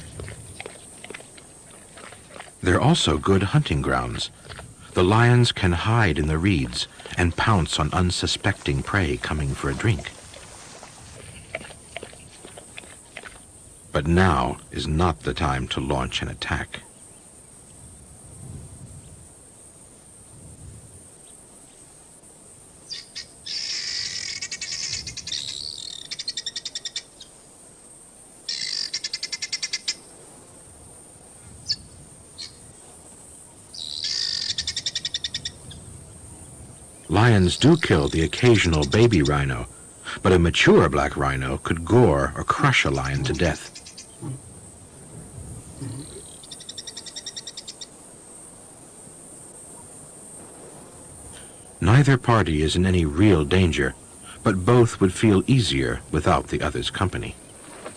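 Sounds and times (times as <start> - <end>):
high insect drone: 0.0 - 57.9
short low grunt: 44.2 - 44.5, 45.8 - 46.2.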